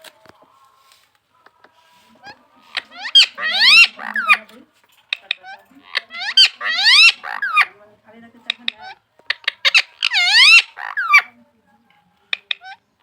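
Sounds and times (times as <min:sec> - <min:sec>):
parrot chirping and squawking: 0:02.2 - 0:04.5, 0:05.1 - 0:07.8, 0:08.5 - 0:11.3.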